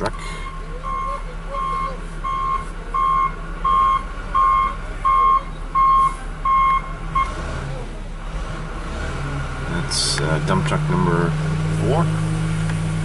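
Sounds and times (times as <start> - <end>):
engine humming: 0.0 - 13.0
backup alarm beeping: 0.2 - 7.3.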